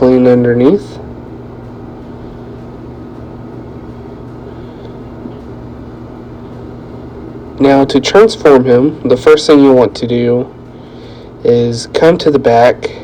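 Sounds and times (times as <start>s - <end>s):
low room hum: 0.0s - 13.0s.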